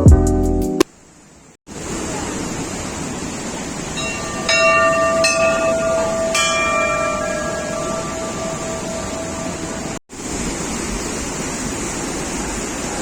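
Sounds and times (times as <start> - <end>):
waterfall rushing: 1.7 - 13.0
temple bell ringing: 3.9 - 10.0.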